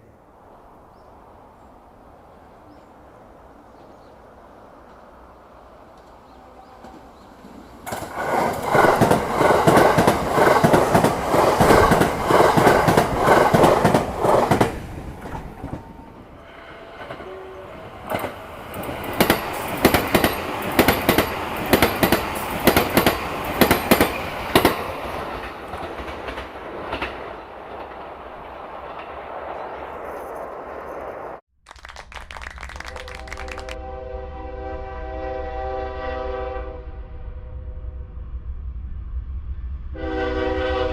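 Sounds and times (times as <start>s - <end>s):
train wheels clacking over rail joints: 7.8s - 15.9s, 18.1s - 29.2s.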